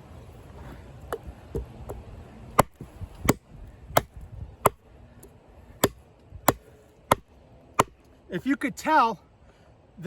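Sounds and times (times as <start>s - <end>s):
blade chopping into a log: 2.6s - 4.8s, 5.8s - 8.0s.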